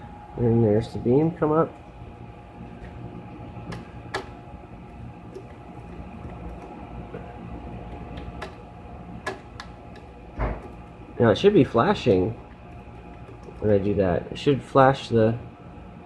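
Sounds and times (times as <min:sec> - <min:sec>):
electrical hum and buzz: 0:00.0 - 0:16.0
control knobs clicking: 0:03.6 - 0:04.4, 0:09.2 - 0:10.9.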